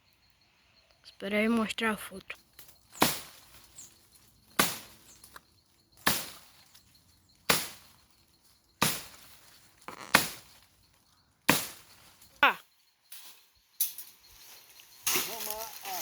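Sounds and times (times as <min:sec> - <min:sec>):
wood being chopped: 0:02.9 - 0:03.6, 0:04.5 - 0:06.5, 0:07.5 - 0:07.9, 0:08.8 - 0:10.6, 0:11.5 - 0:12.0.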